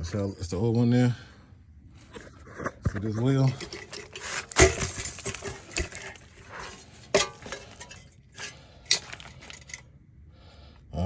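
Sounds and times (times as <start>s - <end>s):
metallic clinks and knocks: 3.4s - 9.8s.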